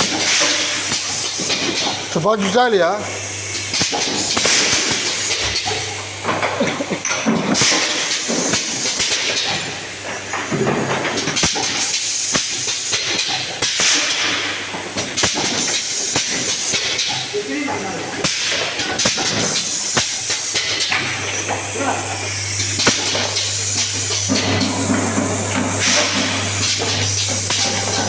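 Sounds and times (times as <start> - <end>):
air hiss bursts: 18.3 - 28.0
steady low machine hum: 21.2 - 28.0.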